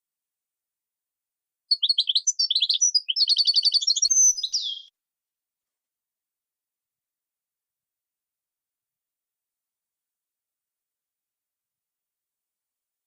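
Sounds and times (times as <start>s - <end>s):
songbird singing: 1.7s - 4.9s.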